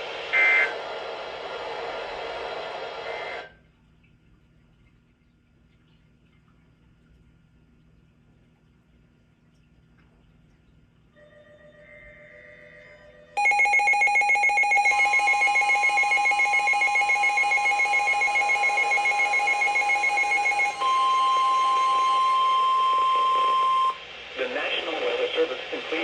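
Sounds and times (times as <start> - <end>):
steady warning alarm tone: 11.2 - 24.1
faint tones: 11.2 - 25.7
rapidly pulsing alarm tone: 12.9 - 24.1.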